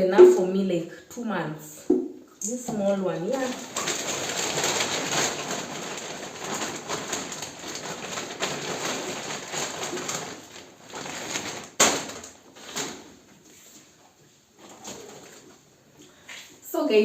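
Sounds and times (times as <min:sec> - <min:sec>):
packaging rustling: 0:02.8 - 0:14.0.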